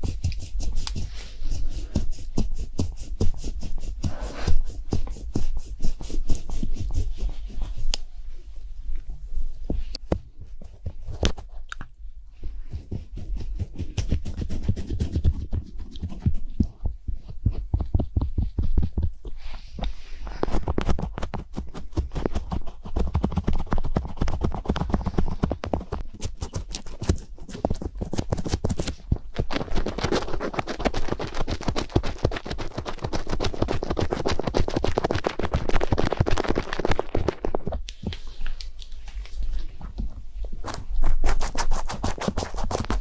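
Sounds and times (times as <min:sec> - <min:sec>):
rapid clicking and tapping: 0:00.0 - 0:01.1, 0:20.5 - 0:37.7.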